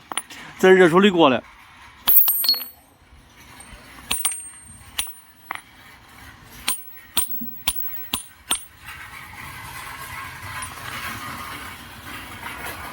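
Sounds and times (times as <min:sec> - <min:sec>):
steel tool pieces clinking: 0:00.0 - 0:00.4, 0:02.1 - 0:02.8, 0:03.6 - 0:05.6, 0:06.6 - 0:08.7.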